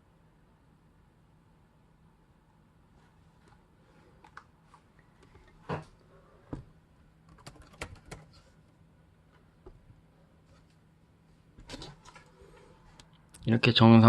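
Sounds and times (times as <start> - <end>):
laptop keyboard typing: 7.2 - 8.4.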